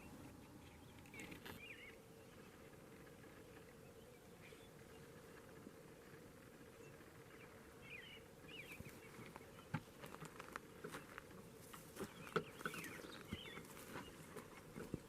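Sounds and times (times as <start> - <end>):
low steady hum: 0.0 - 15.0
small birds chirping: 0.0 - 15.0
small clicks and rustles: 8.7 - 15.0.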